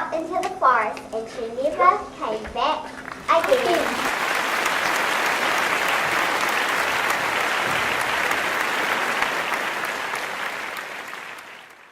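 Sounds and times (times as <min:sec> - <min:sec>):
audience applauding: 0:03.0 - 0:11.9.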